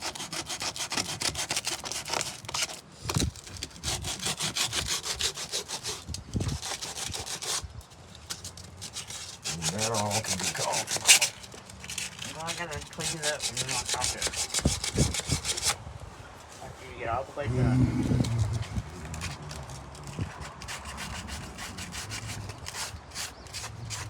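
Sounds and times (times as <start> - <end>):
hand-sanding wood: 0.0 - 2.8, 3.8 - 7.6, 8.8 - 11.4, 12.0 - 15.8, 20.4 - 24.0.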